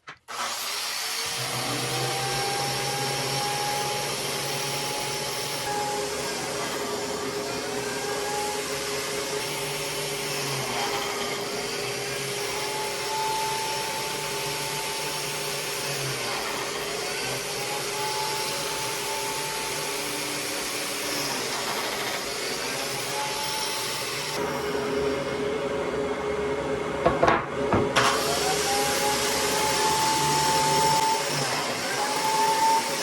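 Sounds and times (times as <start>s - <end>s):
power tool motor whirring: 0.2s - 25.2s, 28.0s - 33.0s.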